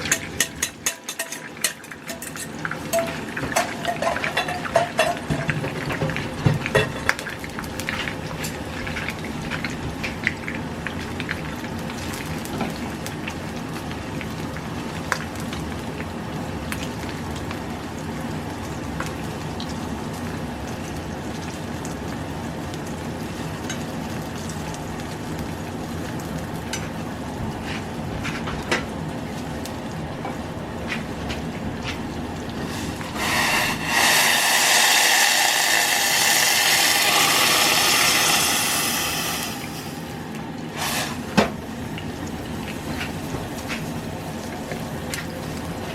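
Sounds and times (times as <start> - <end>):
utensil clattering on pan: 0.0 - 7.3
food sizzling in hot oil: 0.0 - 45.9.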